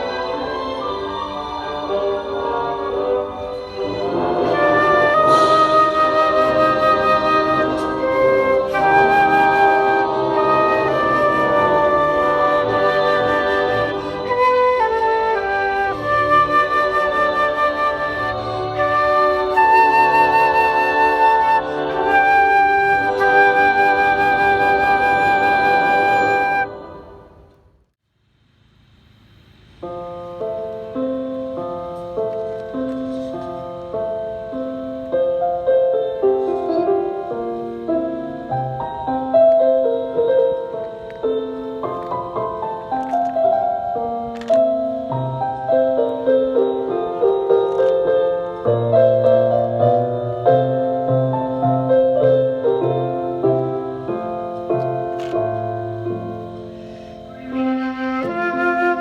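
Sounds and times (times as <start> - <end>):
flute playing slow melody: 0.0 - 27.2, 34.5 - 59.0
quiet lower accompaniment: 0.0 - 59.0
slow piano chords and melody: 29.8 - 59.0.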